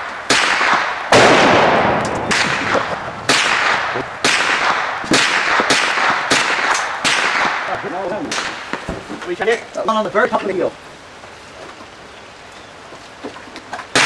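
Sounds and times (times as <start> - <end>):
gunshots with long echo: 0.0 - 8.8.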